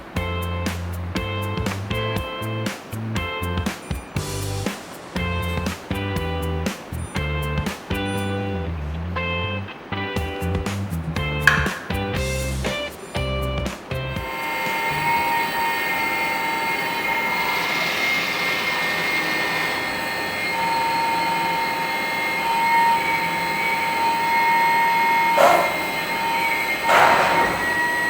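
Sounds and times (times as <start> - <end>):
hydraulic pump whining: 14.2 - 28.0.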